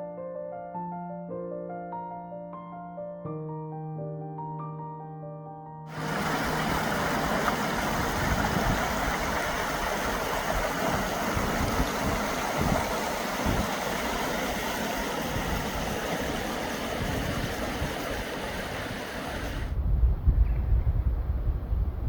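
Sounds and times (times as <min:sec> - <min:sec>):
river flowing: 0:05.9 - 0:19.7.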